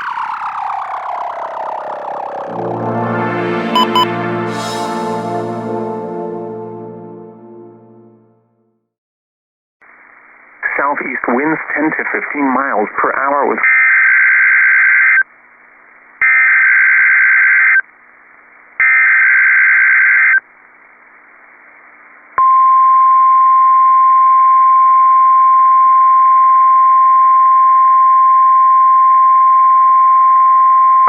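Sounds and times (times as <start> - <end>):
steady alert tone: 2.5 - 5.3.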